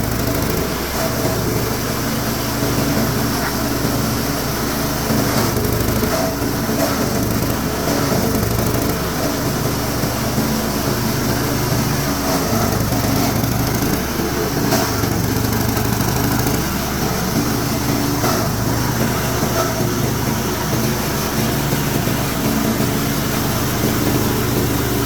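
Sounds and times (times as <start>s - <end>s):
grinder grinding wood scraps: 0.0s - 25.0s.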